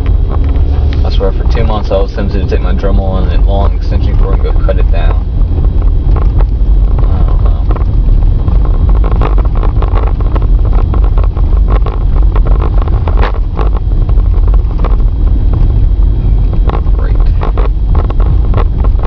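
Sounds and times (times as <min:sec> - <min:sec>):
road and wind rumble: 0:00.0 - 0:19.0
small knocks and bumps: 0:05.8 - 0:15.7.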